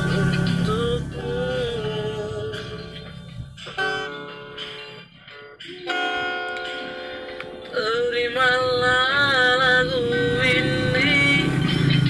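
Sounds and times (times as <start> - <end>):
person singing: 0.0 - 3.9, 7.7 - 12.0
strummed guitar chord: 0.0 - 12.0.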